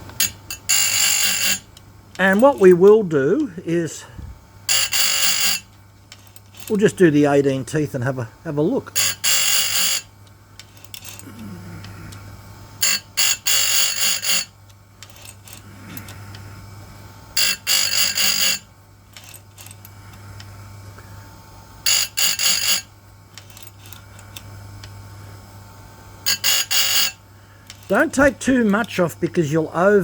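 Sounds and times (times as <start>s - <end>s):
grinder motor hum: 0.0s - 30.0s
high-pitched grinding: 0.2s - 2.9s, 4.7s - 5.7s, 8.9s - 10.1s, 12.8s - 14.5s, 17.4s - 18.6s, 21.8s - 22.9s, 26.2s - 27.2s.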